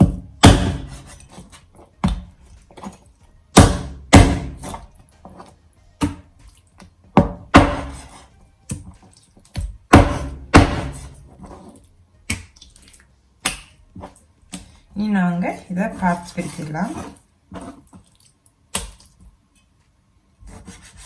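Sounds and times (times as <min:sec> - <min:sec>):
chopping chicken bones: 0:00.0 - 0:01.2, 0:03.5 - 0:04.9, 0:07.2 - 0:08.1, 0:09.6 - 0:11.2.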